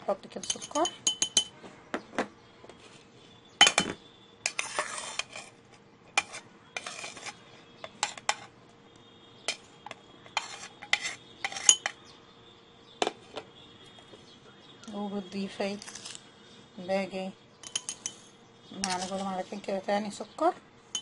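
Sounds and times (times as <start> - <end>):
metal spoon clinking on glass jar: 0.3 - 1.5, 10.4 - 12.0, 17.6 - 19.2.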